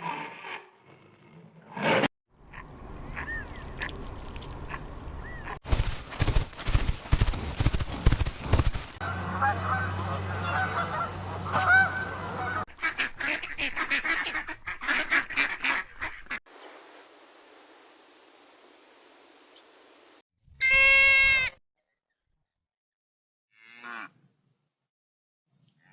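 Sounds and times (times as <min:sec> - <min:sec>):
poultry honking and calling: 0:09.0 - 0:16.4, 0:20.6 - 0:21.5.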